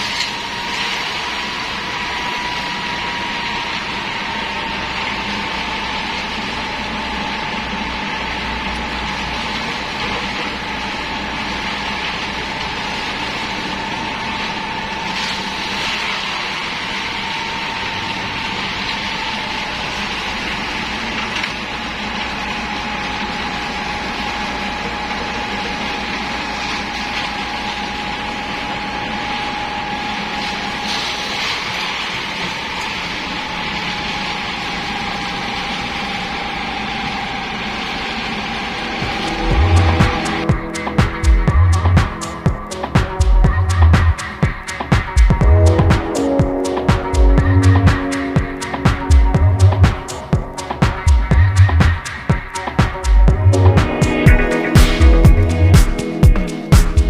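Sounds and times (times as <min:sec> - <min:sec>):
diesel machinery running: 0:00.0 - 0:57.0
high mechanical whine: 0:00.0 - 0:57.0.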